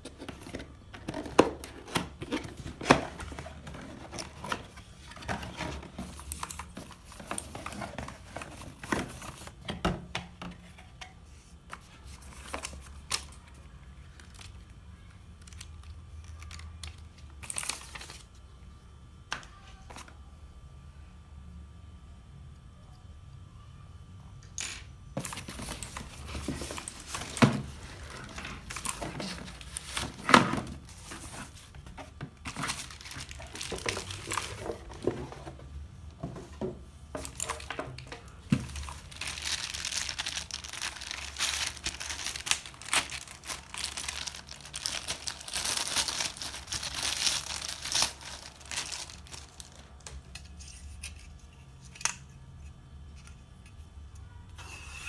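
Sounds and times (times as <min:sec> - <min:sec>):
packaging crinkling: 0:25.2 - 0:50.2.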